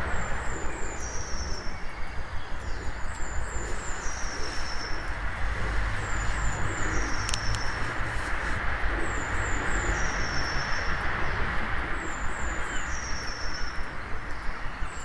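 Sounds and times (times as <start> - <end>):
road traffic rumble: 0.0 - 15.0
sharp clicks: 7.2 - 7.7.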